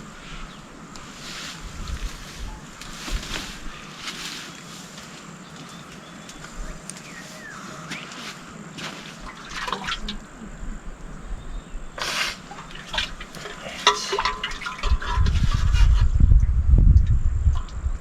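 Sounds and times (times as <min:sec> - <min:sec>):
water splashing and trickling: 0:08.0 - 0:10.3, 0:12.0 - 0:16.2.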